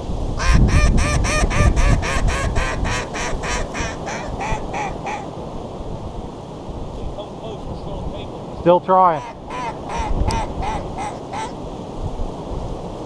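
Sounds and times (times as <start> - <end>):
low wind rumble: 0.0 - 13.0
duck quacking: 0.4 - 5.3, 9.1 - 11.6.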